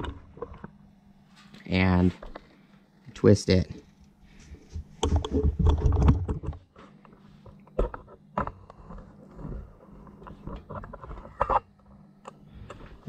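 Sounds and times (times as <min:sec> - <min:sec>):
hard plastic clicking and knocking: 0:05.0 - 0:06.7.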